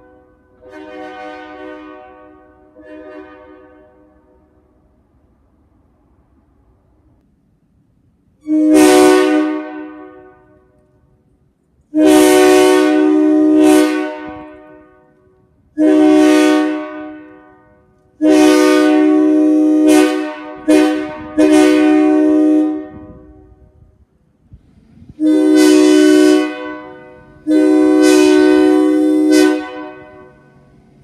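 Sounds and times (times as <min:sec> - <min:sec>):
locomotive air horn blasts: 0:00.0 - 0:04.6, 0:08.4 - 0:10.8, 0:11.9 - 0:24.0, 0:25.2 - 0:30.6.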